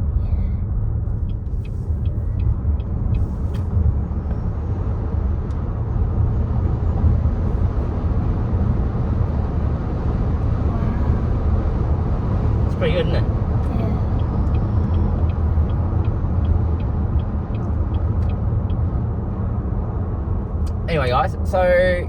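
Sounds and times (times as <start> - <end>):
road and tyre rumble in cabin: 0.0 - 22.0.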